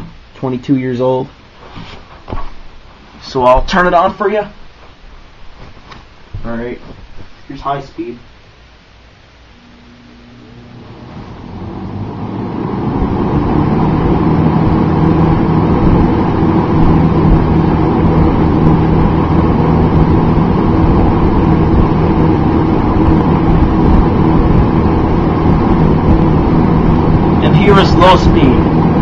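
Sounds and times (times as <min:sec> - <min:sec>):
box fan air rush: 0:01.4 - 0:29.0
low motor hum: 0:08.8 - 0:29.0.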